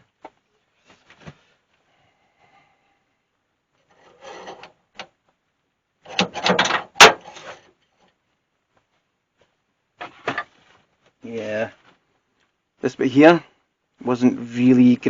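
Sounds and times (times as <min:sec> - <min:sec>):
metal part scraping and rattling: 0:03.8 - 0:04.7, 0:06.1 - 0:07.7.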